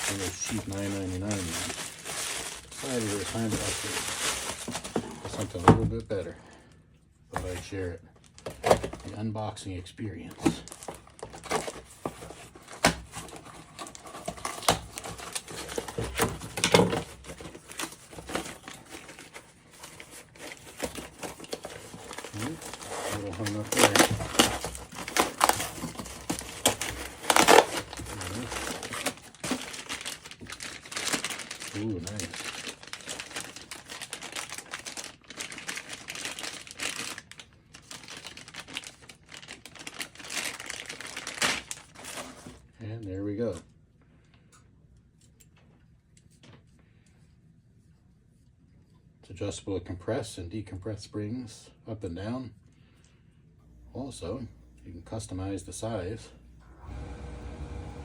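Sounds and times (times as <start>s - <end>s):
packaging crinkling and rustling: 0.0s - 6.6s, 7.3s - 9.2s, 10.3s - 42.7s.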